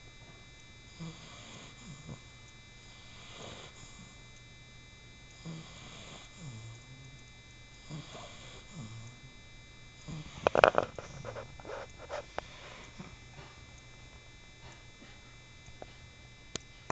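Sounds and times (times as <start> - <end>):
puppy snoring: 0.9 - 4.3, 5.3 - 7.2, 7.8 - 9.4, 10.0 - 13.7
sharp clicks and snuffles: 10.1 - 13.9, 14.6 - 16.9.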